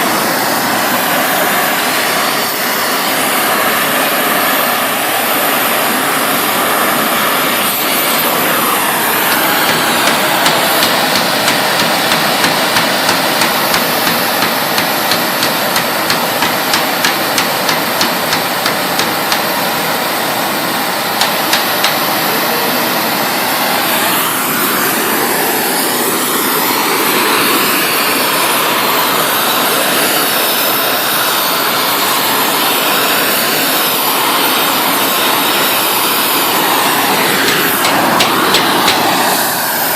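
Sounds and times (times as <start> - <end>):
heating torch hissing: 0.0 - 39.9
hammer striking steel: 8.6 - 19.6, 21.2 - 22.1, 36.5 - 39.8.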